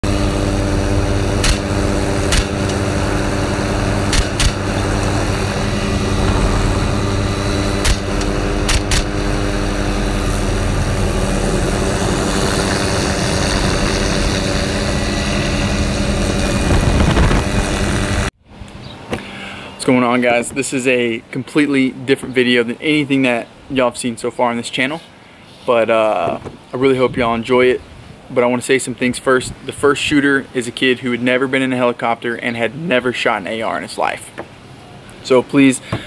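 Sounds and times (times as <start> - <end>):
helicopter flying: 0.0 - 18.3
rifle shots: 4.1 - 4.7, 6.8 - 9.2.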